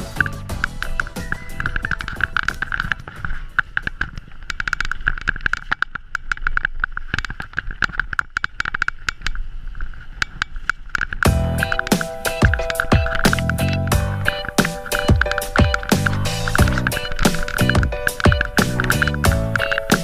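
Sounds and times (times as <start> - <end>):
bike hub ticking buzz: 11.2 - 20.0
tyres and frame knocking: 11.3 - 20.0.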